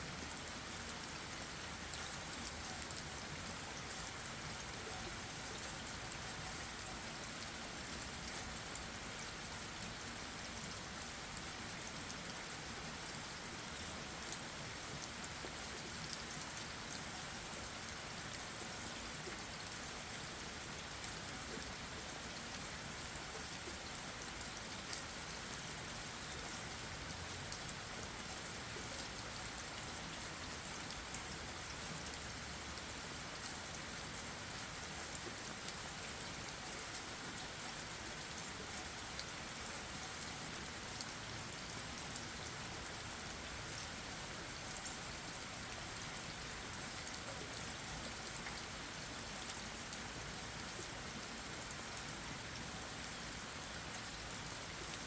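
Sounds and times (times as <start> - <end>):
rain falling on leaves: 0.0 - 55.0.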